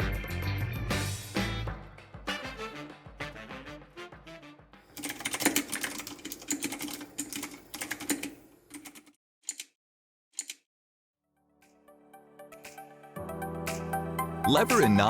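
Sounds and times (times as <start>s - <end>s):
mechanical keyboard typing: 5.0s - 9.7s, 10.4s - 10.6s.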